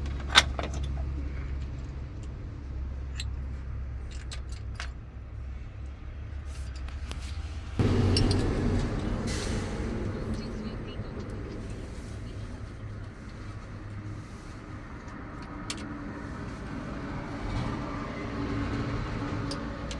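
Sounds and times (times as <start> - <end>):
engine running: 6.8 - 14.3.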